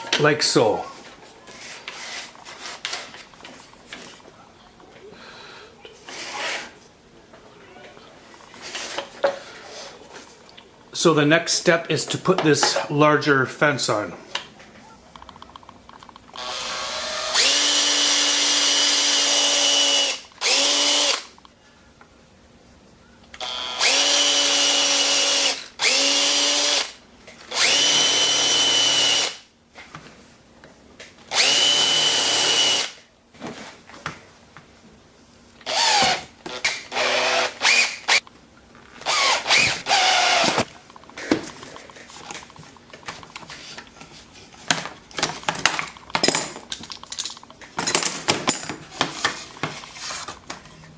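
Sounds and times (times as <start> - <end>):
power drill whining: 16.3 - 21.3, 23.4 - 29.4, 31.3 - 33.0, 35.6 - 38.2, 39.0 - 40.7.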